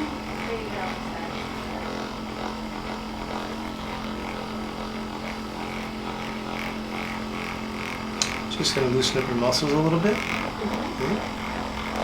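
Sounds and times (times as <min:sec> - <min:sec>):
percussion massager humming: 0:00.0 - 0:12.0.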